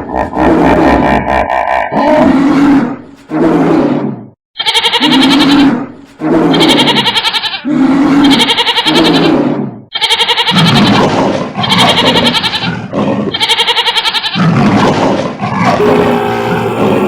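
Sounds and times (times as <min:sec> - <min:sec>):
goats bleating: 0:04.6 - 0:05.6, 0:06.6 - 0:07.6, 0:13.4 - 0:14.4.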